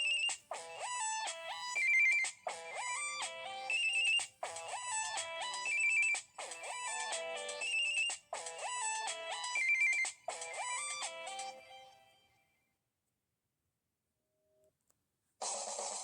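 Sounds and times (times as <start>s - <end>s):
cell phone ringtone melody: 0.0s - 12.2s.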